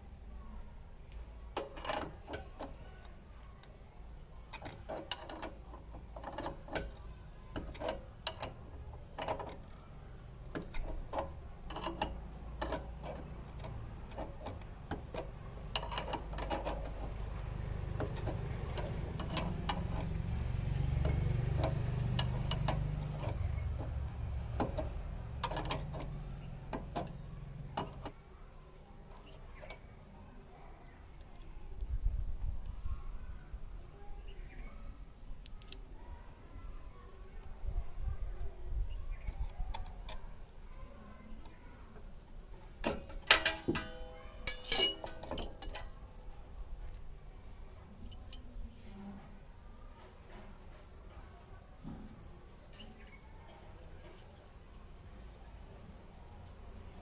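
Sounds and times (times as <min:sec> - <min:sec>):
metallic clinks of hand tools: 0:42.9 - 0:46.2.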